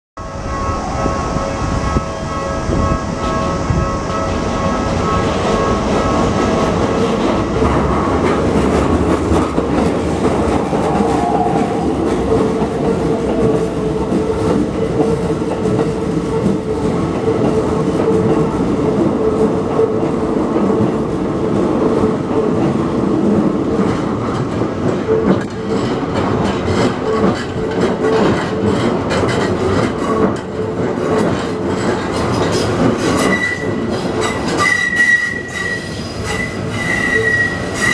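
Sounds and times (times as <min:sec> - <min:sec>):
wheels clattering over rail joints: 0:22.4 - 0:37.9
high-pitched wheel squeal: 0:32.6 - 0:37.9.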